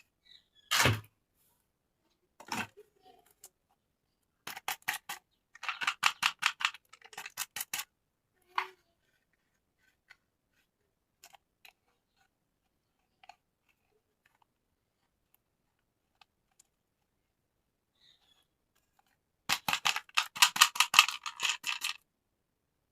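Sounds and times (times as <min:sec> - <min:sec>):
plastic toy and packaging clicking: 0:04.4 - 0:08.8, 0:11.2 - 0:12.3, 0:18.7 - 0:22.1.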